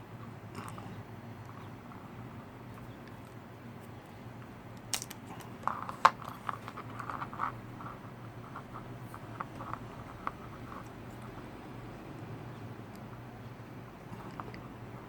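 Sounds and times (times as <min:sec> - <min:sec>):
steady low hum: 0:00.0 - 0:15.0
tool clicking on small parts: 0:04.8 - 0:05.8.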